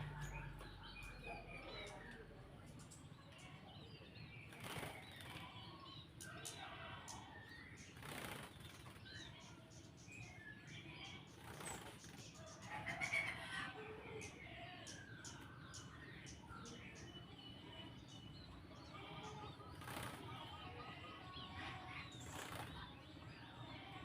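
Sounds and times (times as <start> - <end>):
bird wings fluttering: 4.5 - 5.5, 8.0 - 9.2, 11.3 - 12.2, 19.8 - 20.3, 22.2 - 22.9.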